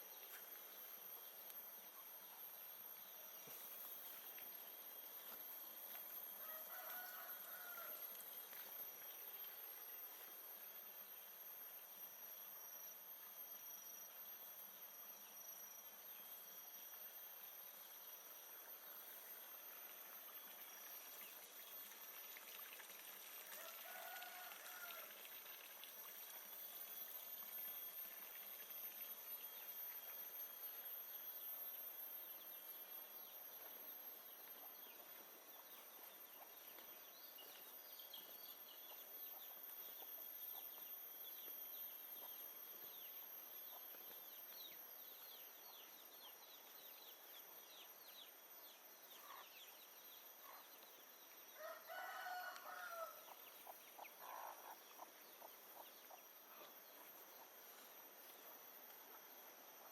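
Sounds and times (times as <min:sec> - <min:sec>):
steady hiss: 0:00.0 - 0:46.2
faint insect trilling: 0:00.0 - 0:59.9
rooster crowing: 0:06.4 - 0:08.2, 0:23.6 - 0:25.2, 0:51.6 - 0:53.4.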